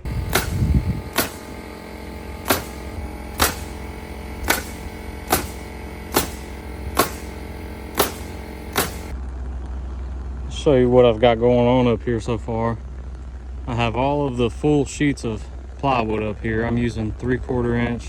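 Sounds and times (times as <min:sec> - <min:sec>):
nails being hammered: 0:00.0 - 0:09.1
steady motor hum: 0:00.0 - 0:09.3.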